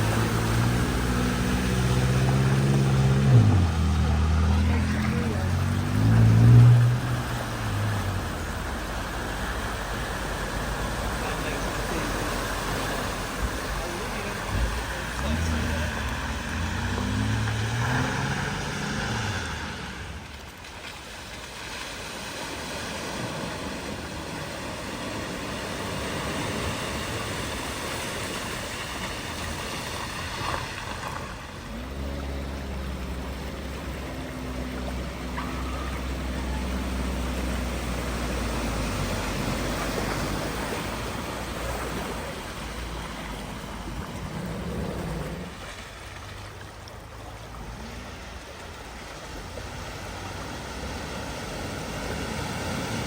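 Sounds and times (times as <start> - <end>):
floodwater rushing: 0.0 - 53.0
vehicle engine running low: 0.0 - 53.0.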